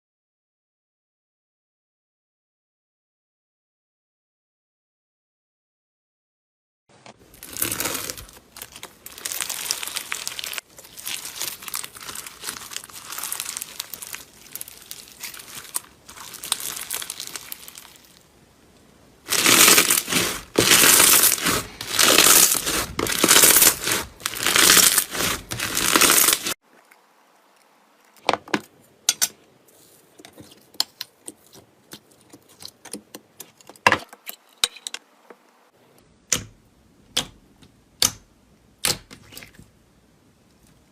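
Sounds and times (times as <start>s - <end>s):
slime crinkly crackling: 7.2s - 18.3s, 19.2s - 26.6s.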